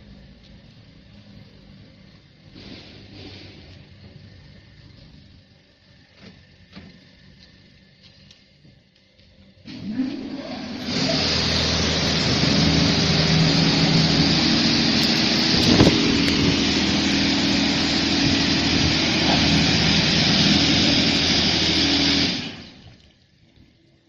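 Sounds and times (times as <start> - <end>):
low motor hum: 0.0 - 24.0
car wash water rushing: 9.7 - 23.6.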